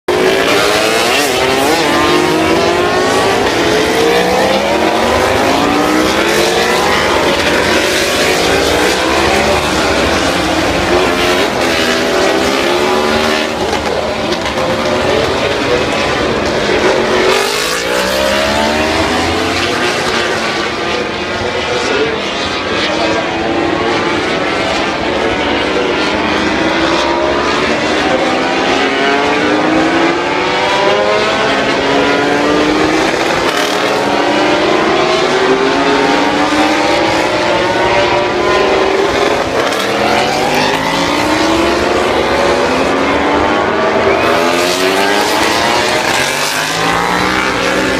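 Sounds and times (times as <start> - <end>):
race bike engines revving: 0.0 - 47.9.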